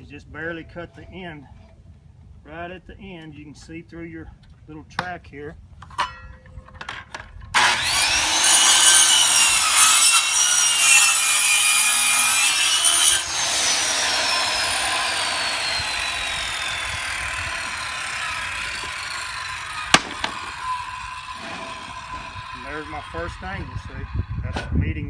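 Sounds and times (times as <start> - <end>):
circular saw cutting: 7.6 - 24.4
saw blade coasting down: 7.6 - 24.4.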